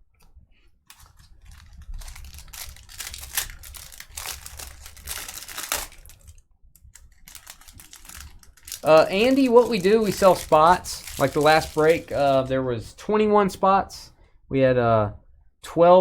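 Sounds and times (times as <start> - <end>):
plastic wrapper crinkling: 0.9 - 12.5.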